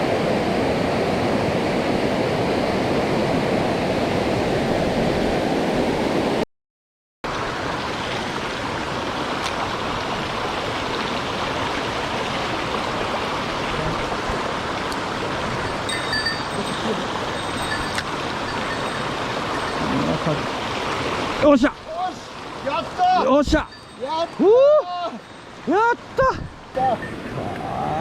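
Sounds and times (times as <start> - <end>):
stream water rushing over rocks: 7.3 - 28.0.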